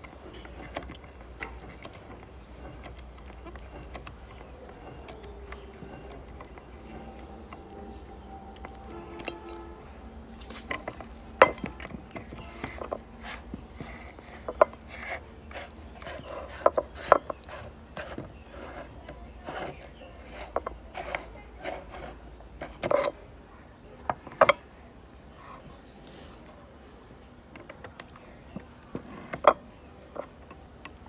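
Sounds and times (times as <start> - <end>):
meat grinder crushing candy: 0.0 - 22.2.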